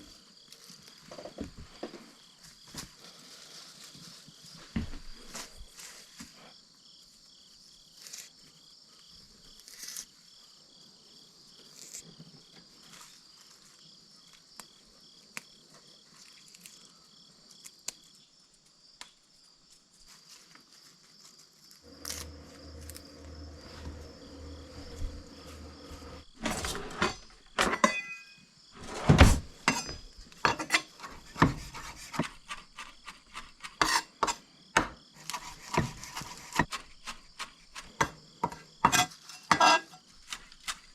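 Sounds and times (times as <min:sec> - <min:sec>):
crickets chirping: 0:00.0 - 0:40.9
low steady hum: 0:21.8 - 0:30.0
clattering and knocks: 0:21.9 - 0:32.7.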